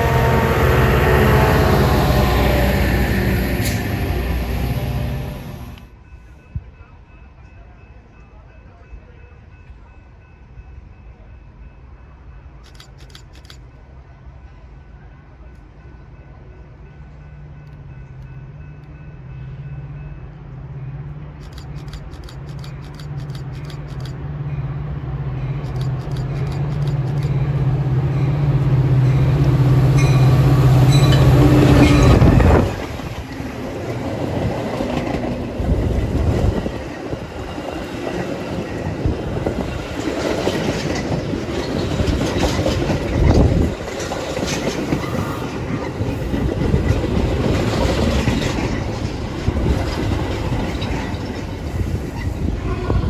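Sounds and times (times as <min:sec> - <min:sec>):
train cars clickety-clack: 0:00.0 - 0:06.7, 0:12.6 - 0:13.8, 0:21.2 - 0:24.6, 0:25.4 - 0:53.0
diesel locomotive engine: 0:00.0 - 0:53.0.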